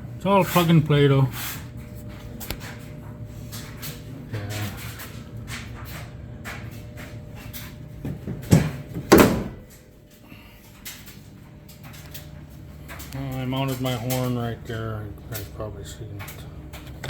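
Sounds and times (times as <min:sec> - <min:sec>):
steady low hum: 0:00.0 - 0:17.0
door shutting knocks: 0:08.0 - 0:09.7.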